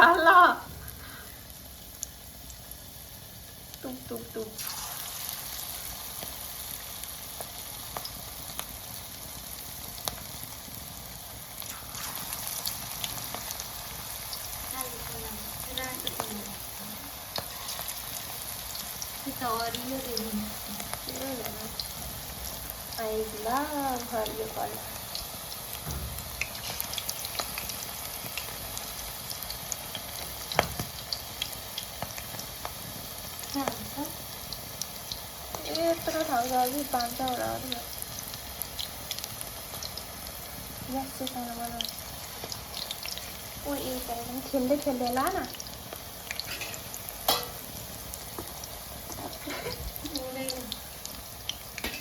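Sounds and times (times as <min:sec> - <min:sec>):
food deep-frying in oil: 0:00.0 - 0:52.0
knock: 0:25.8 - 0:26.2.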